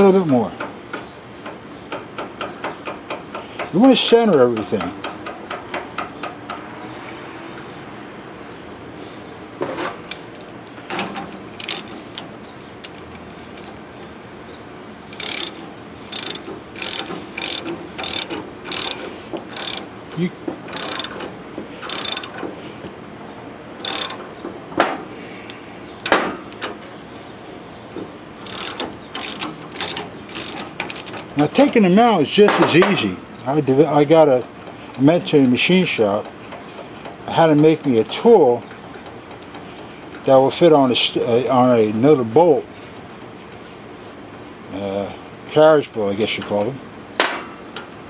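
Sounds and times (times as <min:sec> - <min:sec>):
ratchet wrench clicking: 0:11.6 - 0:12.2, 0:15.1 - 0:20.0, 0:20.7 - 0:22.4, 0:23.8 - 0:24.2, 0:28.4 - 0:31.3.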